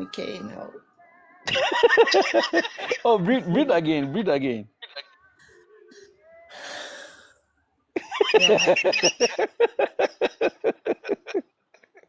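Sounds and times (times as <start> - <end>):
person laughing: 1.5 - 4.0, 8.0 - 11.5
person saying yeah: 3.2 - 3.8
person breathing in deeply: 6.5 - 7.4.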